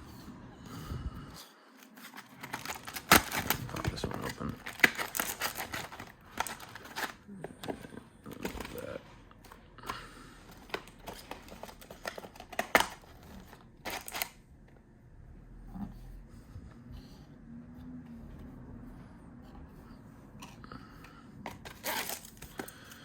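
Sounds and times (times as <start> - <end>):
cardboard and wrapper rustling: 1.7 - 14.4, 21.4 - 23.0.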